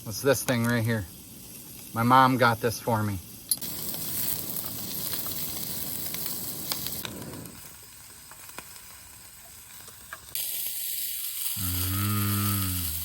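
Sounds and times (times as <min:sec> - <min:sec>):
food sizzling: 0:00.0 - 0:13.0.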